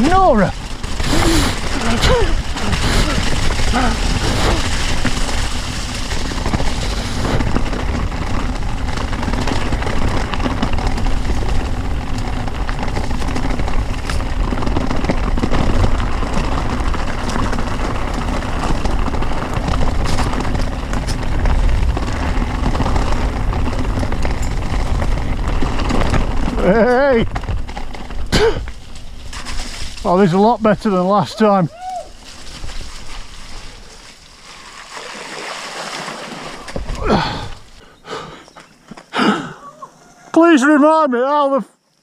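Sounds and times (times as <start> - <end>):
mountain bike rumbling and rattling: 0.0 - 39.6
bike clicks and knocks: 7.4 - 30.0.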